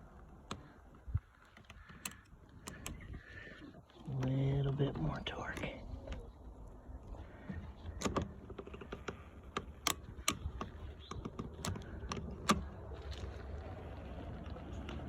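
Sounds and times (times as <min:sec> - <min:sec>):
ratchet strap clicking: 0:01.5 - 0:03.2, 0:08.0 - 0:12.7.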